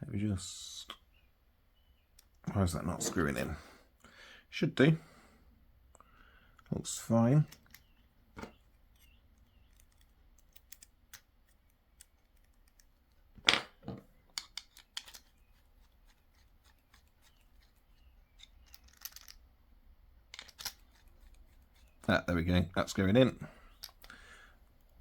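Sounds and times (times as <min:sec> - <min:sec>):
screwdriver and padlock clicks: 0:09.0 - 0:12.9
scratchy rustle: 0:15.1 - 0:19.0.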